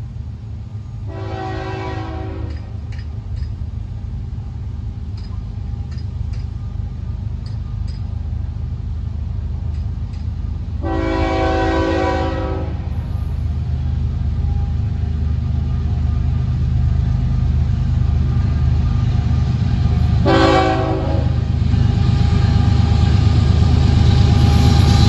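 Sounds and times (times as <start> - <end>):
diesel locomotive engine rumble: 0.0 - 25.0
train air horn: 1.0 - 2.7, 10.8 - 13.2, 20.0 - 22.7.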